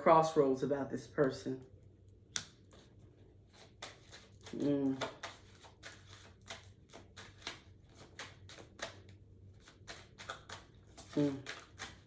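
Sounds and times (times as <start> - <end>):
cards being shuffled: 3.5 - 12.0.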